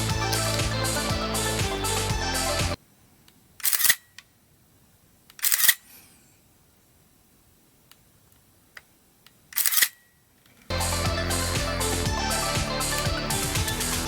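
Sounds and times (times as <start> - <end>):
camera shutter clacking: 3.6 - 4.2, 5.4 - 5.8, 9.6 - 10.0.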